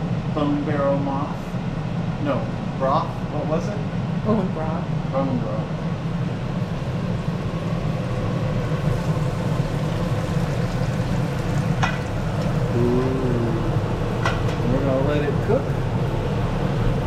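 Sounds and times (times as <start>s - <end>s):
fish sizzling in hot oil: 6.2s - 12.8s.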